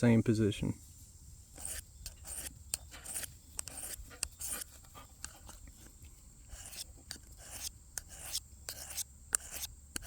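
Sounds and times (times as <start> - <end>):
knife scraping on diamond file: 1.6 - 5.6, 6.5 - 10.0.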